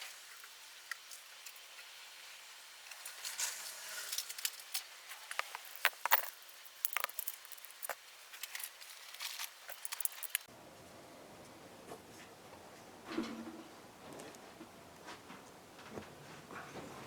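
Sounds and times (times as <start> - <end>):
tools clicking and scraping metal: 5.2 - 10.5.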